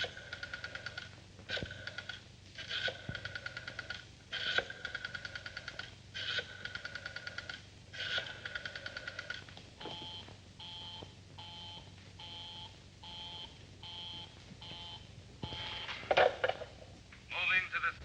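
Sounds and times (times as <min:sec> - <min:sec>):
rotary dial clicking: 0:00.0 - 0:09.4.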